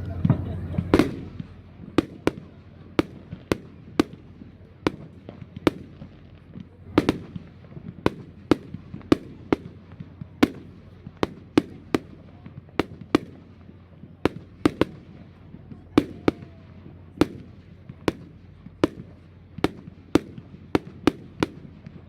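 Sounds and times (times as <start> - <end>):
fireworks banging: 0.0 - 22.0.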